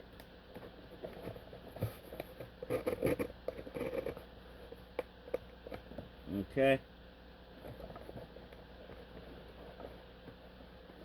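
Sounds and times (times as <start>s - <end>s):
cardboard and tape rustling: 0.5s - 4.7s, 7.6s - 11.0s.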